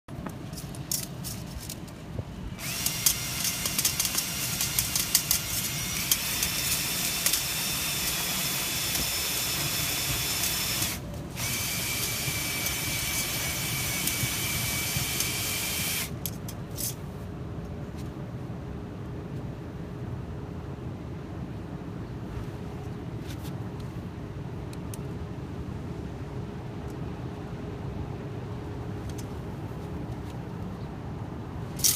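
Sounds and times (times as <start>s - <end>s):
power tool motor whining: 2.6s - 16.1s.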